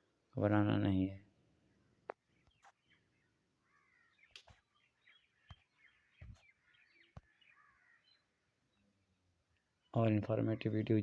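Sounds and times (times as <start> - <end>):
faint bird chirps: 1.6 - 11.0.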